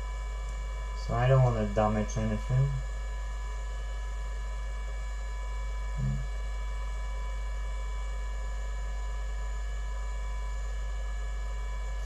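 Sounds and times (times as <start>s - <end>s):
electrical mains hum: 0.0s - 12.0s
low murmur: 6.0s - 6.3s.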